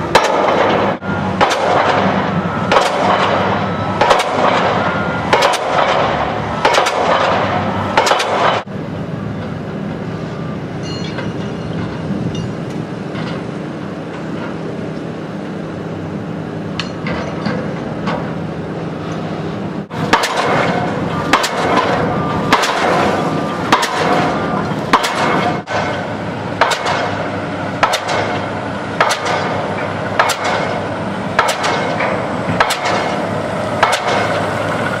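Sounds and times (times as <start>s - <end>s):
machine drone: 0.0s - 35.0s
pile-driving hammer striking: 0.1s - 8.7s, 19.9s - 33.2s, 33.8s - 34.4s.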